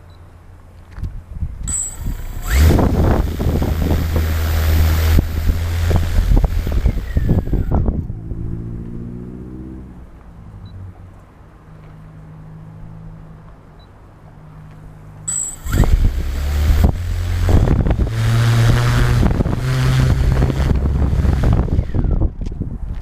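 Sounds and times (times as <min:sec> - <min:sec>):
wind buffeting microphone: 0:01.0 - 0:08.8, 0:15.6 - 0:23.0
quadcopter motors humming: 0:01.6 - 0:08.1, 0:15.3 - 0:22.6.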